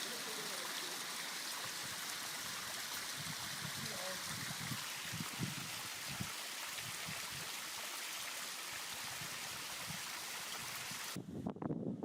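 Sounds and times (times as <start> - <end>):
stream water rushing: 0.0 - 11.2.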